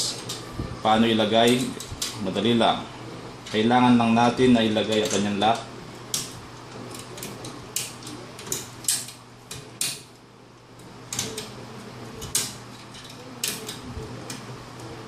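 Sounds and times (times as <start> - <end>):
typewriter parts clicking and clanking: 6.9 - 10.0, 12.2 - 14.4.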